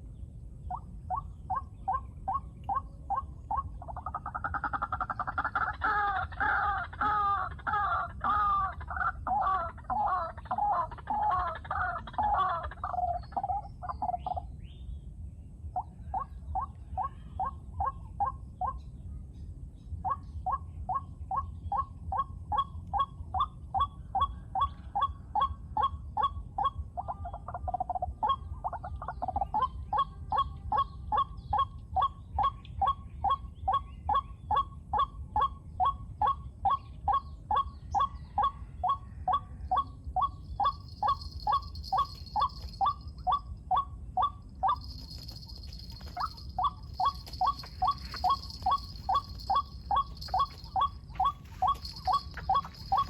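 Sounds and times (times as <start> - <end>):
waterhen calling harsh notes: 40.2 - 53.0.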